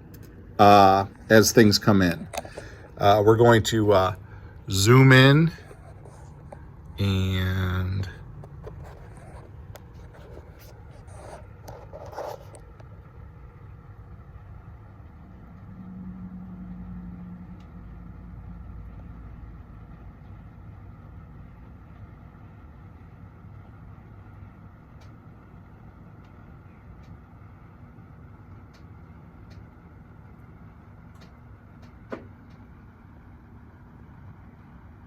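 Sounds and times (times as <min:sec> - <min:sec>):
low background rumble: 0:00.0 - 0:35.0
low hum: 0:00.0 - 0:35.0
scraping handling noises: 0:02.1 - 0:03.4, 0:05.4 - 0:06.7, 0:08.3 - 0:12.8.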